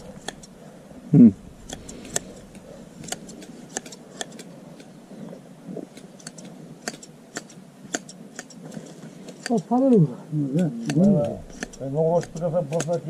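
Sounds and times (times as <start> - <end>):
hand shears snipping fleece: 0.0 - 0.5, 1.6 - 5.0, 5.8 - 13.0.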